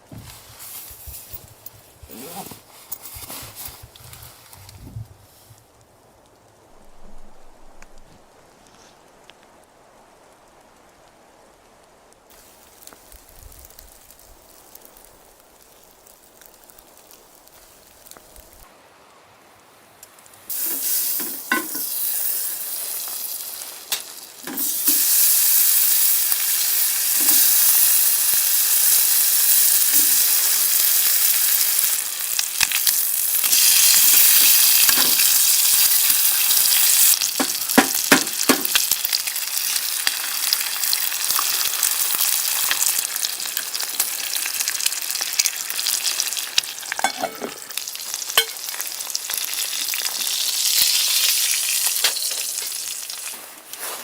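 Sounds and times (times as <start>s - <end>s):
food sizzling in a pan: 12.3s - 18.7s, 19.6s - 54.0s.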